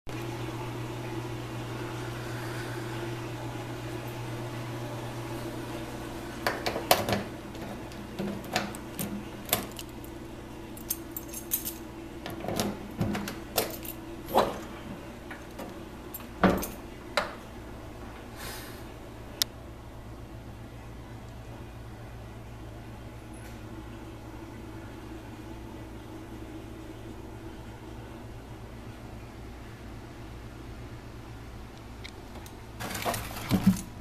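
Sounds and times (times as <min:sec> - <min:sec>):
steady low hum: 0:00.1 - 0:34.0
keys jangling: 0:10.8 - 0:11.8, 0:13.6 - 0:14.5, 0:16.1 - 0:16.8.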